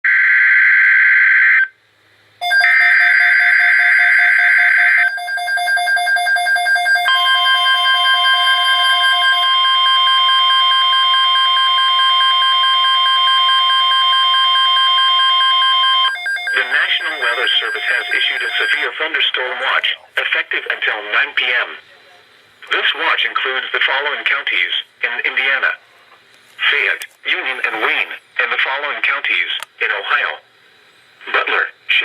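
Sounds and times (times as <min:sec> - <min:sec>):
steady alert tone: 0:02.4 - 0:19.0
digital header data bursts: 0:02.4 - 0:21.8
faint steady tones: 0:02.4 - 0:32.0.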